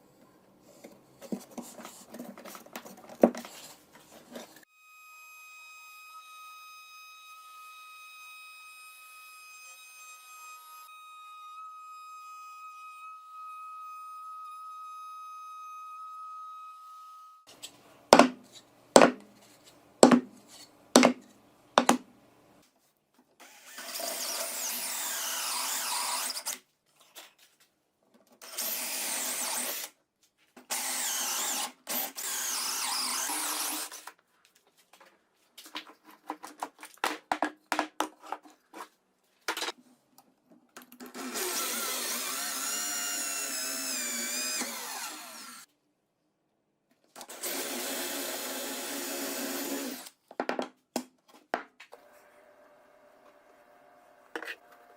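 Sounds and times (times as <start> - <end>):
power tool running: 41.1 - 45.7.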